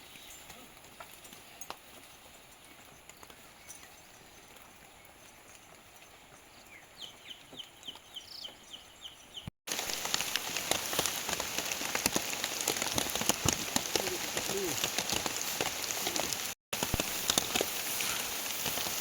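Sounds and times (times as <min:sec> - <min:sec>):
dense pattering: 0:09.7 - 0:19.0.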